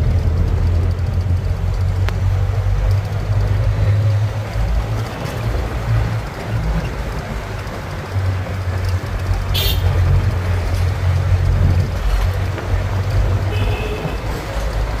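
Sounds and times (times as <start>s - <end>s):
engine and road rumble: 0.0s - 15.0s
car horn toot: 9.5s - 10.0s, 13.5s - 14.3s.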